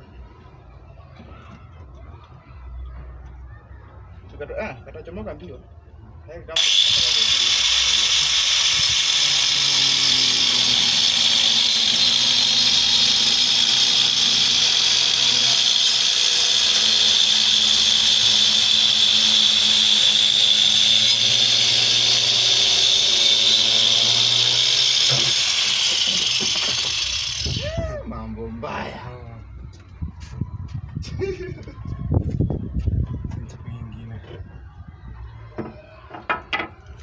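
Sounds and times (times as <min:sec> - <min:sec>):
power tool on wood: 0:06.6 - 0:27.7.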